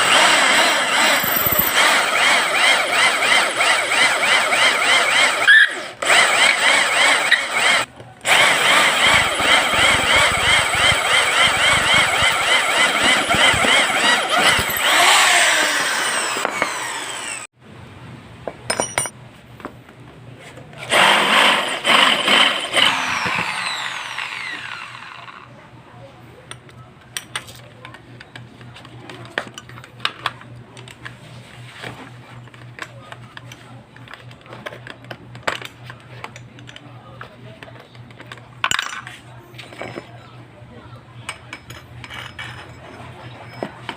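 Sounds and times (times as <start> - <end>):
power tool winding down: 0.0 - 17.5, 20.9 - 25.5.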